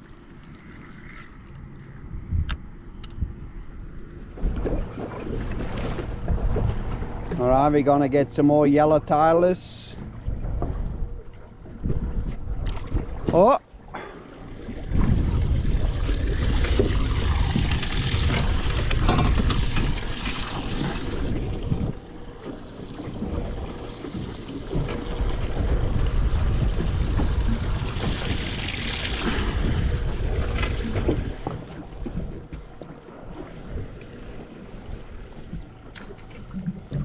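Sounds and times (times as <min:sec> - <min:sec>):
wind buffeting microphone: 0:01.9 - 0:08.4, 0:09.0 - 0:35.8
splashing water: 0:10.6 - 0:37.0.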